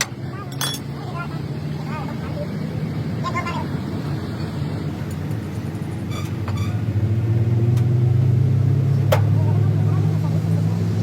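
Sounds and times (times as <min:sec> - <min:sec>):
low engine hum: 0:00.0 - 0:11.0.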